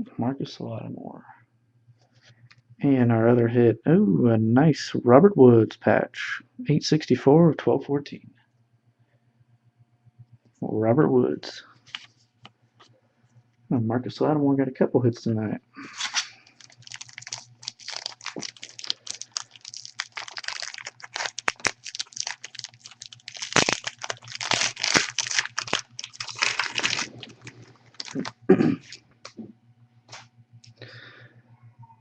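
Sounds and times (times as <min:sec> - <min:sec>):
wrapper tearing and crinkling: 0:15.9 - 0:29.0.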